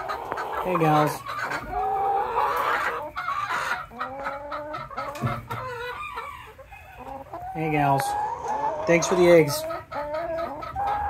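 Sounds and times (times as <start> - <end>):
hens clucking: 0.0 - 11.0
hens drawn-out calls: 0.0 - 11.0.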